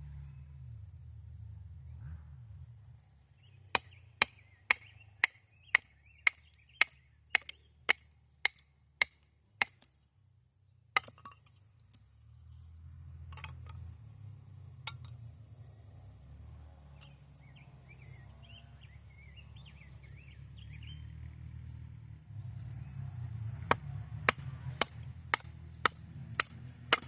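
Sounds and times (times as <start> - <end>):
sharp chopping strikes: 3.7 - 9.8.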